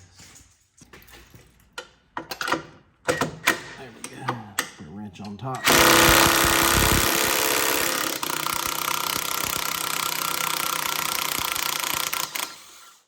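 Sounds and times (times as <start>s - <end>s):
impact wrench rattling: 5.6s - 12.8s.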